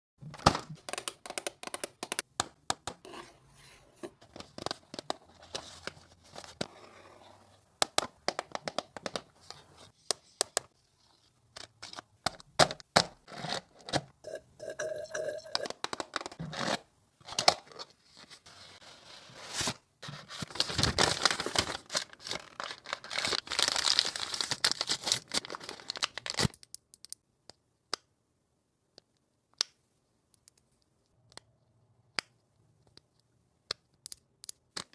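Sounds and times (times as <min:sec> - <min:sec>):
packaging tearing and crinkling: 0:20.4 - 0:26.7.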